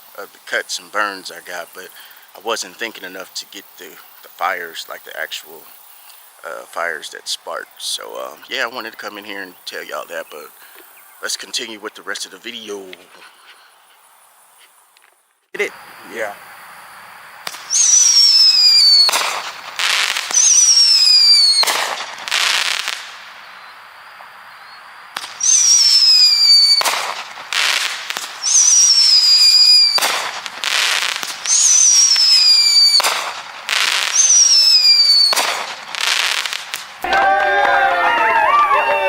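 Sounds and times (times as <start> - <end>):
loud firework bangs: 15.6 - 39.0
firework whistles falling in pitch: 17.4 - 39.0.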